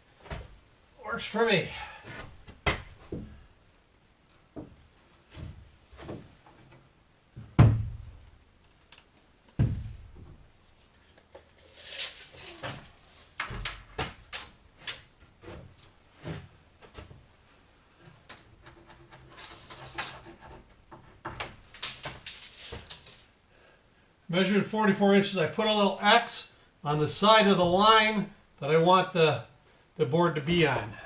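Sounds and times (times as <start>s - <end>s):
wood scraping and rubbing: 18.1s - 23.2s.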